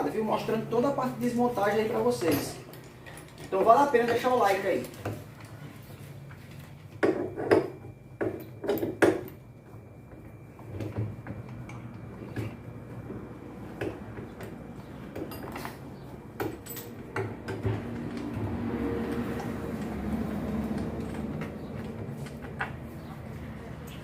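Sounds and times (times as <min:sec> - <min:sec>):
tools and metal parts knocking: 0:01.8 - 0:05.3, 0:07.0 - 0:09.4, 0:10.8 - 0:18.5, 0:19.1 - 0:24.0.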